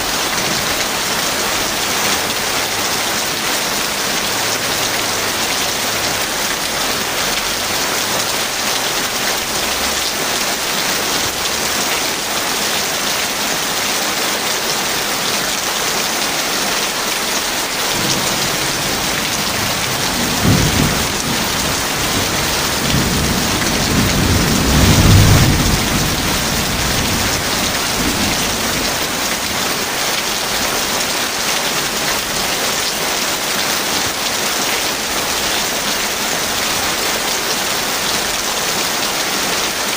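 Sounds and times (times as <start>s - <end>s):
heavy rain: 0.0s - 39.9s
thunderclap and rolling rumble: 18.0s - 29.0s.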